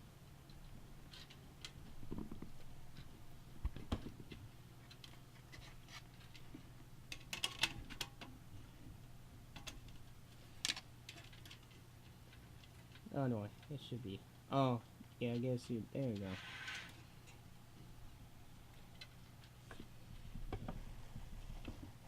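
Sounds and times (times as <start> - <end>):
faint low hum: 0.0 - 22.0
computer parts clicking and tapping: 7.1 - 8.3, 9.5 - 10.0.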